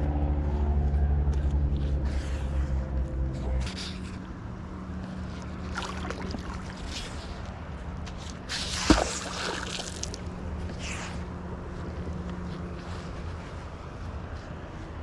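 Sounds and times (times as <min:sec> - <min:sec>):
water sloshing and splashing: 0:04.6 - 0:11.3.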